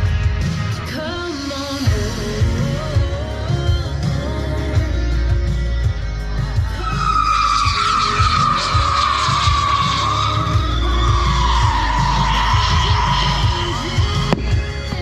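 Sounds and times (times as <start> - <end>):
music with low beat: 0.0 - 15.0
firework whistle falling in pitch: 6.8 - 14.6.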